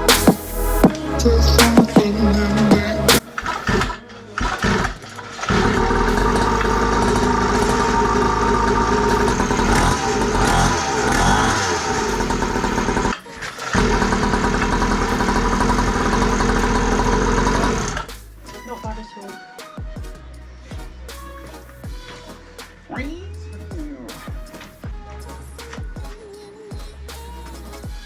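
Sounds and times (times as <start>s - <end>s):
small dirt bike engine running: 13.7s - 17.9s.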